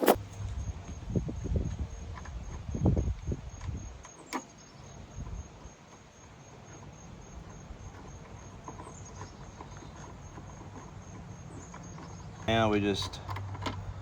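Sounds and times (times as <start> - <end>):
crickets chirping: 0.0 - 13.2.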